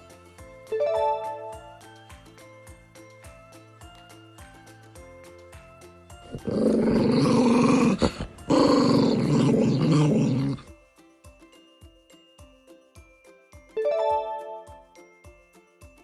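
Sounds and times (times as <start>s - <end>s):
animal growling: 6.3s - 10.7s.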